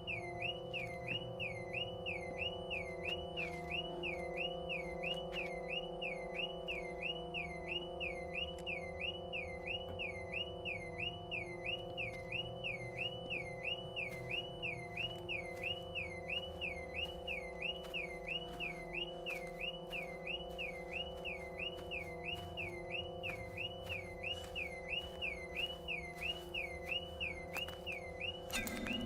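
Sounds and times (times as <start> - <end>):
car alarm wailing: 0.0 - 29.0
steady low drone: 28.5 - 29.0.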